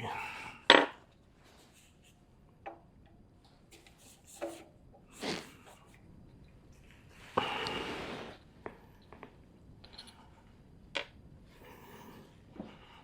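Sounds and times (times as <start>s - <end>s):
soft rustle: 6.7s - 10.6s.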